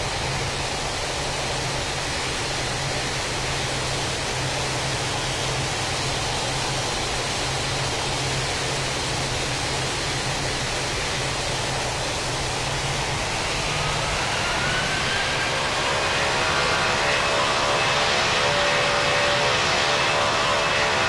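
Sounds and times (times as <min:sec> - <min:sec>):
jet engines roaring: 0:00.0 - 0:21.0
rising engine whine: 0:11.0 - 0:21.0.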